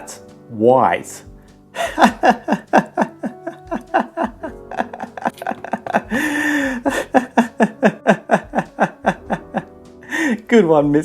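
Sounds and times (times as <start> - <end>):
background music: 0.0 - 11.0
person laughing: 1.8 - 10.3.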